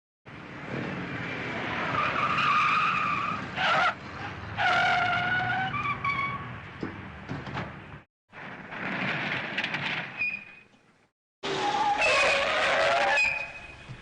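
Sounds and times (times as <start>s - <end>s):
car tyres squealing: 1.5s - 6.6s, 11.4s - 14.0s.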